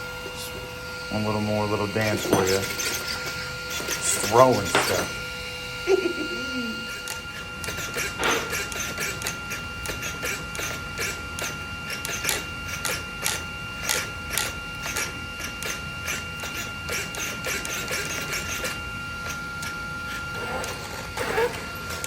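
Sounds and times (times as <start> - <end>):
servo whirring bursts: 0.0 - 5.8, 6.5 - 22.0
high-pitched hum: 0.0 - 9.4.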